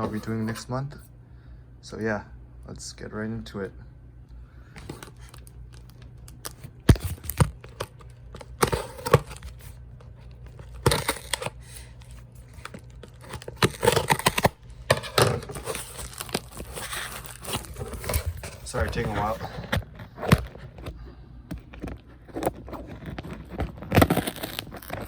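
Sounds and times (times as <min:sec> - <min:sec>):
packing tape ripping: 0:04.8 - 0:19.3, 0:22.4 - 0:25.0
packaging crinkling: 0:04.8 - 0:20.9, 0:21.6 - 0:25.0.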